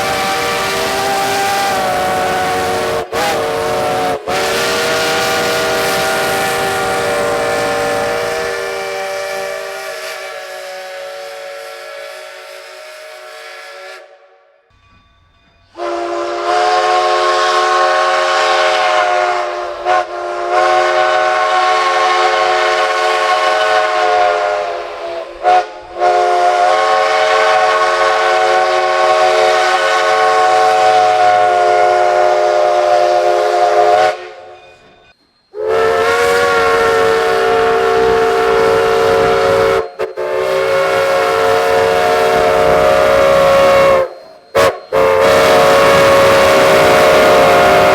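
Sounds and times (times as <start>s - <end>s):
steam hiss: 0.0s - 47.9s
steam locomotive whistle chord: 0.0s - 47.9s.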